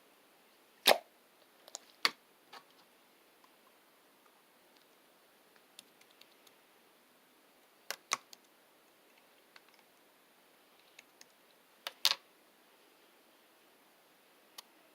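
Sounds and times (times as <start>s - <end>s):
slime popping loudly: 0.8s - 1.0s.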